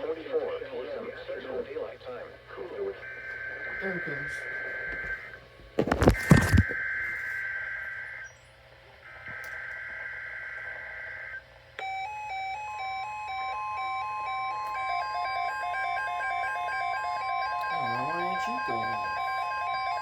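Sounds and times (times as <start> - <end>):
stepped beeps over steady tone: 11.8 - 20.0
two-tone electronic data bursts: 13.1 - 20.0.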